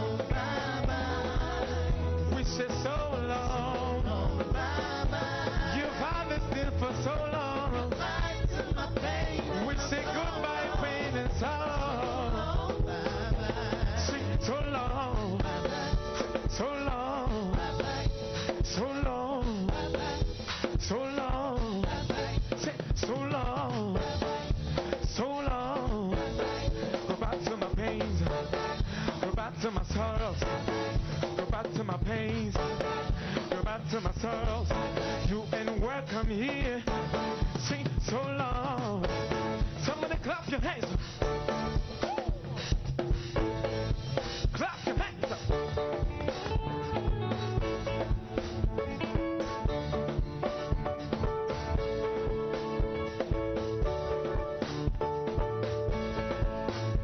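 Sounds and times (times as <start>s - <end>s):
person singing lead: 0.0s - 24.3s
gospel band playing: 0.0s - 57.0s.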